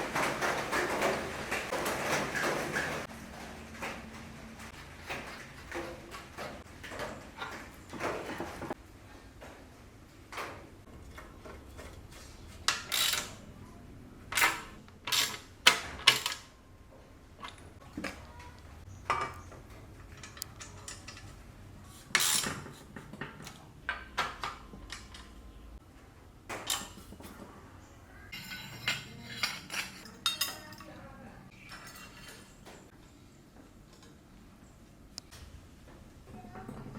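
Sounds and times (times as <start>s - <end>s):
metal tools clinking and knocking: 12.7s - 13.4s, 20.0s - 21.4s, 26.6s - 27.4s, 28.3s - 32.8s.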